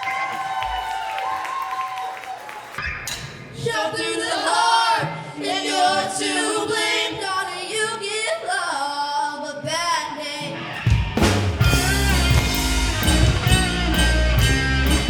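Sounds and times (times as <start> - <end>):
voices singing a cappella: 3.6 - 10.8
rock band playing: 10.8 - 15.0.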